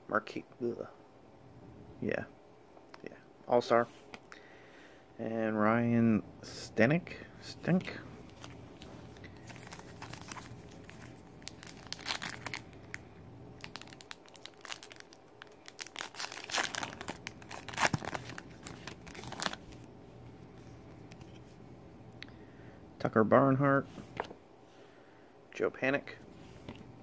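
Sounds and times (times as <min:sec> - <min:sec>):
wrapper tearing and crinkling: 0:08.3 - 0:13.0, 0:13.6 - 0:19.9.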